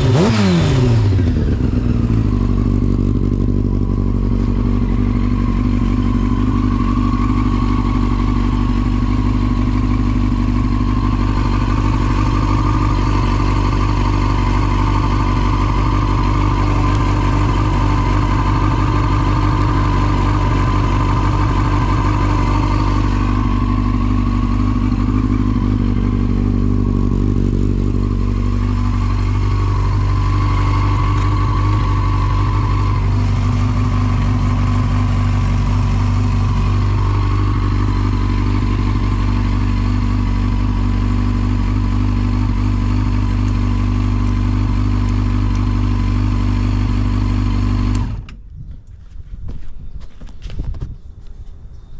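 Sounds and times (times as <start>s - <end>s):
motorcycle engine idling: 0.0s - 48.5s.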